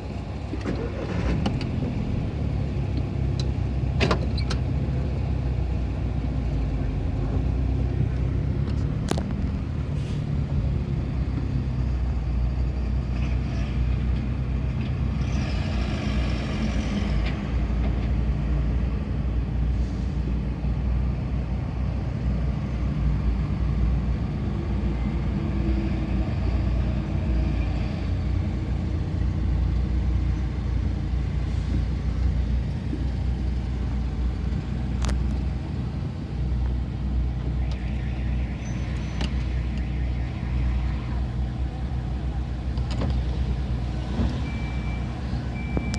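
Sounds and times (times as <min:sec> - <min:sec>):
vehicle engines rumbling: 0:00.0 - 0:45.9.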